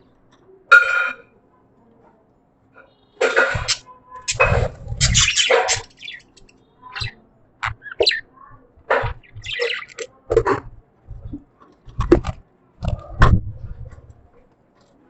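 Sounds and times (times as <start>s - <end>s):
budgies chirping: 3.3s - 11.4s.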